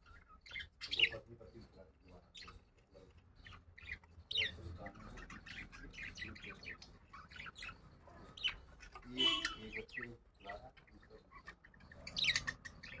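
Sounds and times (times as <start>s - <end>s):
budgerigars chirping: 0.0s - 13.0s
harsh bird call: 3.9s - 13.0s.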